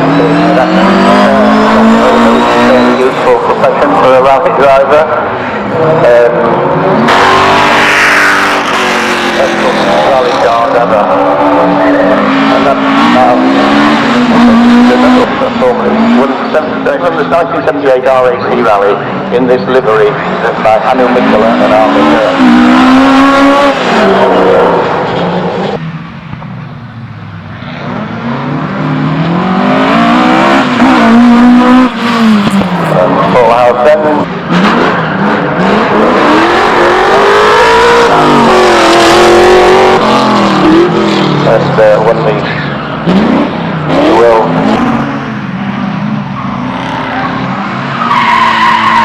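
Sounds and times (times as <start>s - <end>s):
rally car engines revving: 0.0s - 49.0s
tyres squealing: 29.6s - 49.0s.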